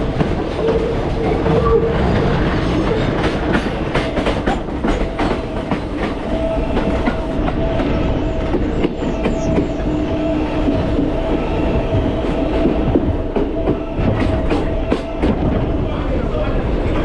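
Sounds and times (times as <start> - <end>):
wheels clacking over rail joints: 0.0 - 7.4
train rumbling on track: 0.0 - 17.0.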